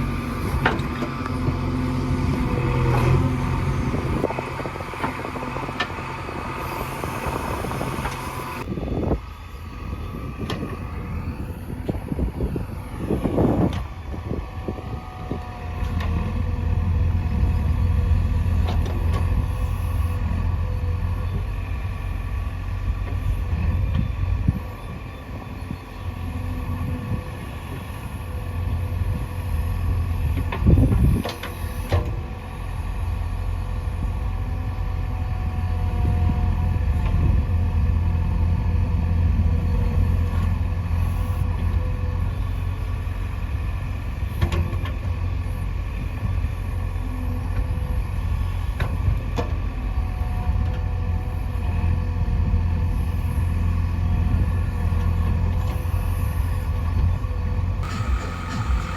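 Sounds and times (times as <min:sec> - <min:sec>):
diesel engine under load: 0:00.0 - 0:58.9
loud clunk: 0:57.8 - 0:58.9.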